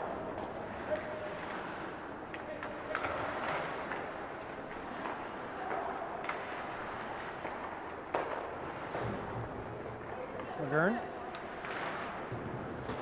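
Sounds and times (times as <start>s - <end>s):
hockey sticks and puck clicking: 0.4s - 9.1s, 11.3s - 13.0s.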